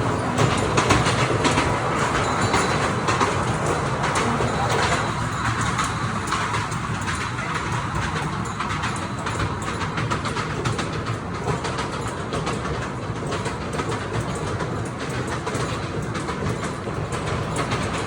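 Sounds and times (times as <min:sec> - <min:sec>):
train rumbling and clattering: 0:00.0 - 0:18.0.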